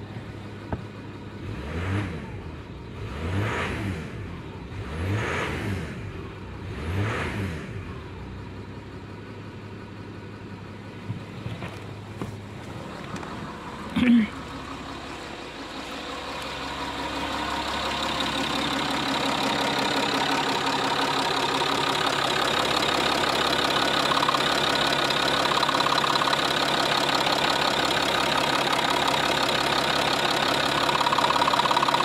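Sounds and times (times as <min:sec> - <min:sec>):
diesel engine idling: 0:00.0 - 0:03.0, 0:07.7 - 0:32.0
fast ticking from injectors: 0:20.0 - 0:32.0.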